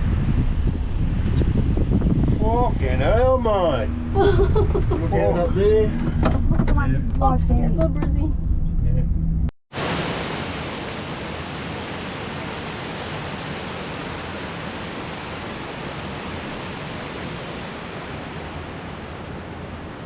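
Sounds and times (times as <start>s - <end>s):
waterfall rushing: 9.8s - 20.0s.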